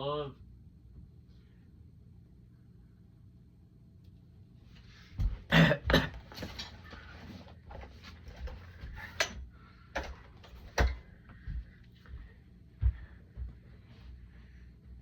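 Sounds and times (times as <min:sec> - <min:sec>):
loud coughs: 0:05.4 - 0:06.4.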